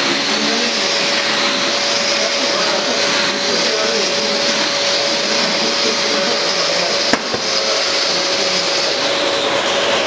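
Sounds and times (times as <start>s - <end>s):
dust extractor running: 0.0s - 10.0s.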